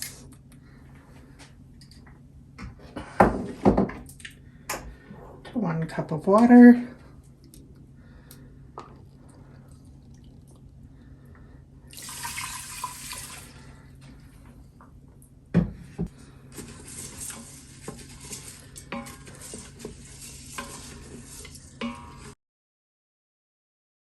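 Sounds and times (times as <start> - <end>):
water pouring into a pot: 11.9 - 13.7
spoon stirring rice in a pot: 16.5 - 22.4
spoon scraping and clinking on pot: 17.0 - 22.3.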